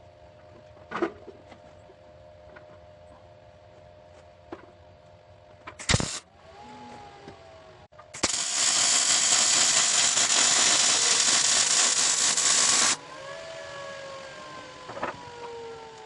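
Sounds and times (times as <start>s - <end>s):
welding arc hissing: 5.8s - 6.2s, 8.2s - 13.0s.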